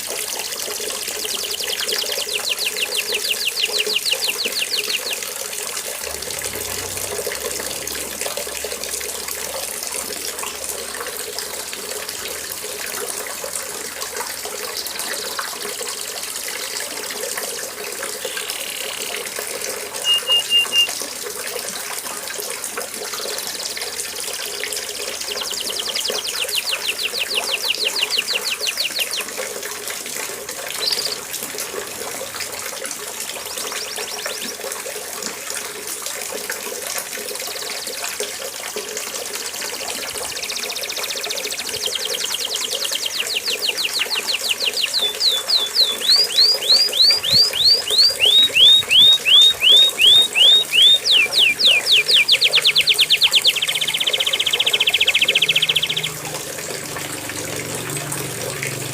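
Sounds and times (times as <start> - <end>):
canary singing: 1.1 - 8.8, 18.2 - 19.2, 20.0 - 21.0, 24.9 - 29.6, 30.7 - 31.4, 40.0 - 56.9.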